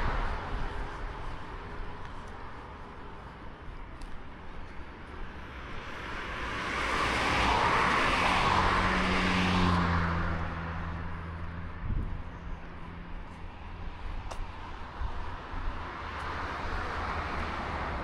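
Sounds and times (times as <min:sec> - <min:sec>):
low engine hum: 0:00.0 - 0:18.0
vehicle passing by: 0:05.8 - 0:14.0.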